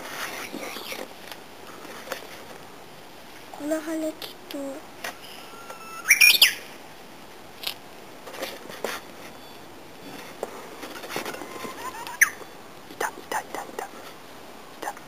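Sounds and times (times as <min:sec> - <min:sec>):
short bird chirps: 0:05.2 - 0:06.7
bush warbler singing: 0:05.2 - 0:06.8, 0:11.3 - 0:13.5.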